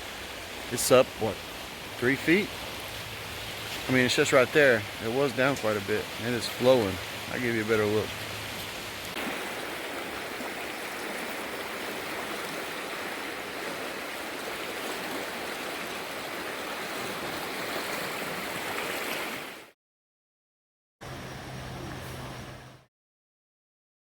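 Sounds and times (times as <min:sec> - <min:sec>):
river rushing: 0:00.0 - 0:19.7
steady low hum: 0:21.0 - 0:22.9.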